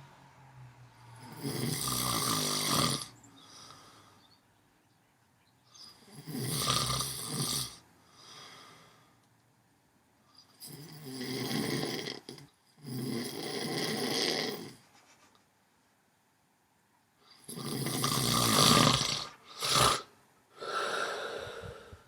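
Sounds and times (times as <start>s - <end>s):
man snoring loudly: 1.1s - 3.1s, 6.0s - 7.8s, 10.6s - 14.8s, 17.4s - 21.9s
soft breath: 3.4s - 4.4s, 8.0s - 9.3s, 20.5s - 22.0s.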